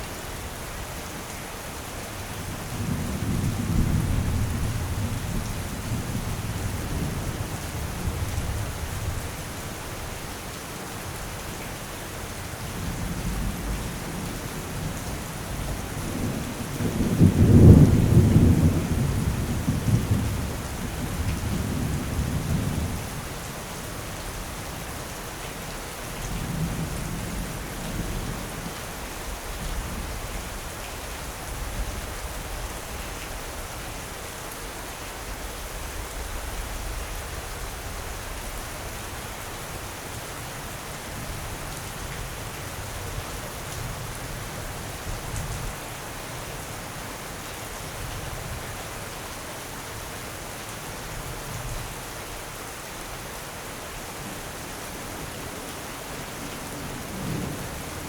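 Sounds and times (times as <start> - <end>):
steady rain falling: 0.0 - 58.0
low rumble of thunder: 2.4 - 9.5, 12.6 - 23.5, 26.2 - 30.6, 55.0 - 58.0.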